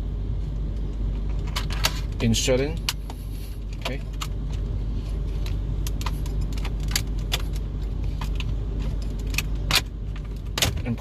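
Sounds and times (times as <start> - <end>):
steady low hum: 0.0 - 11.0
metal keys clicking and scraping: 5.9 - 10.5.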